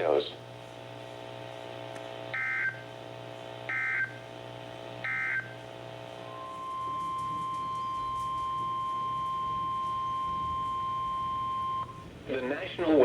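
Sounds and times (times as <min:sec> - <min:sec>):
faint low hum: 0:00.0 - 0:13.0
raspy electronic data chirps: 0:06.4 - 0:12.0.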